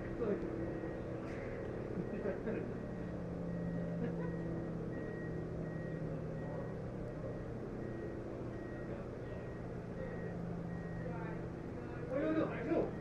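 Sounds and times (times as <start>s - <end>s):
vehicle engine humming: 0.0s - 13.0s
faint high electronic beep: 2.8s - 11.4s.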